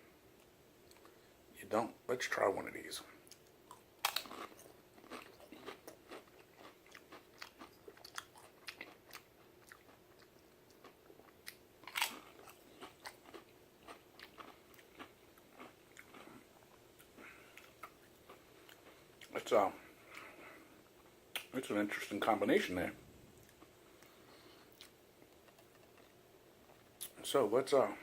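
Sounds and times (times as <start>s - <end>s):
potato chips crunching: 3.3s - 19.4s.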